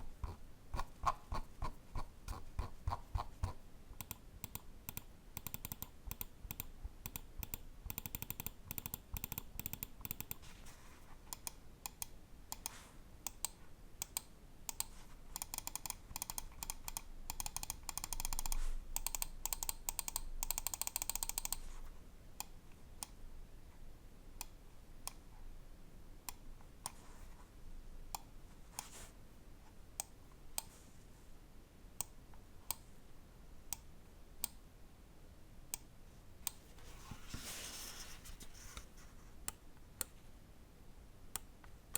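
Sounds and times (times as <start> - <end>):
mouse scroll wheel ticking: 0.2 - 10.4, 11.3 - 21.7.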